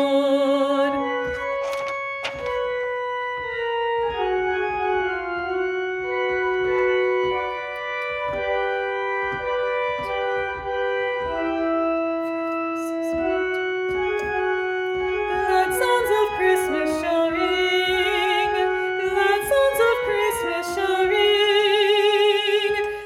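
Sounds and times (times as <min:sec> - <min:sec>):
organ-like keyboard chords and melody: 0:00.0 - 0:23.0.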